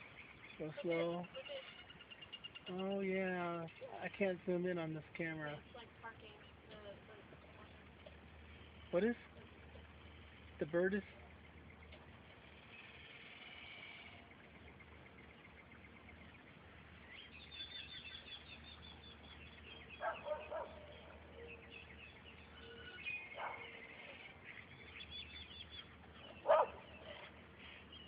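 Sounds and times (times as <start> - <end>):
small birds chirping: 0.0 - 28.0
dog barking: 20.0 - 21.2, 23.4 - 23.7, 26.4 - 27.2.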